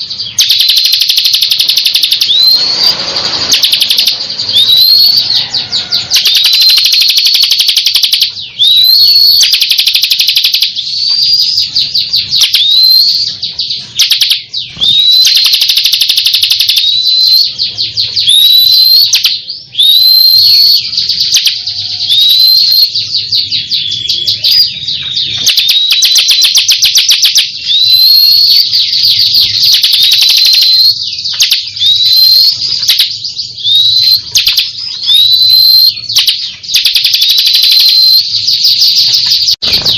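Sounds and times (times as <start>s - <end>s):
bird ticking trill song: 0.0s - 39.9s
bird upslurred whistle: 0.4s - 5.5s, 6.2s - 11.6s, 12.4s - 13.3s, 18.2s - 23.0s, 25.3s - 39.0s.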